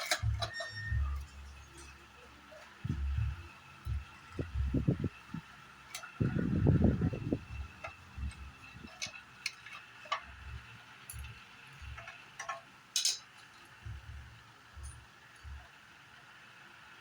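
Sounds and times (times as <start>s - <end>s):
dull low thuds: 2.8s - 5.2s, 6.2s - 8.6s, 13.8s - 14.9s
clicks and taps of tools: 11.1s - 13.5s.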